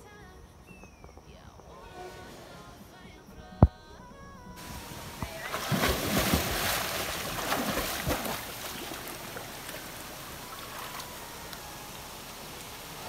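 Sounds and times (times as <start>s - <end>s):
rush of moving water: 4.6s - 13.0s
water sloshing and splashing: 4.6s - 13.0s.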